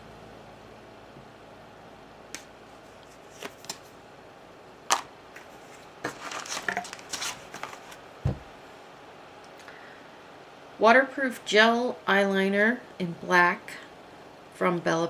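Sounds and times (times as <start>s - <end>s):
packaging crinkling: 4.9s - 8.0s.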